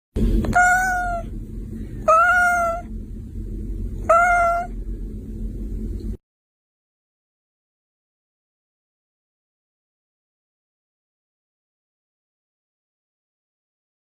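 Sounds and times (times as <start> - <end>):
low background rumble: 0.2 - 6.2
cat meowing: 0.5 - 1.3, 2.0 - 2.9, 4.0 - 4.8.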